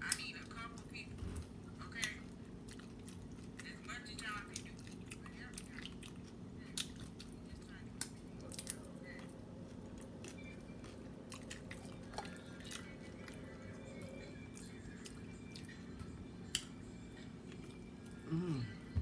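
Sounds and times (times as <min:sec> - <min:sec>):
person chewing with mouth smacks: 0:04.5 - 0:13.6.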